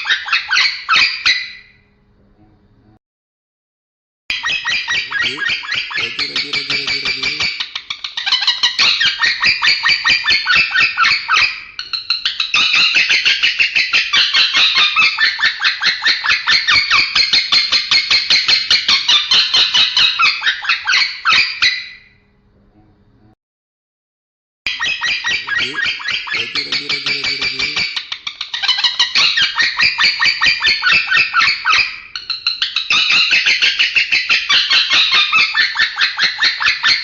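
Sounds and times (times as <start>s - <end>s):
lovebird chattering harsh chirps: 4.3s - 9.5s, 24.7s - 33.4s.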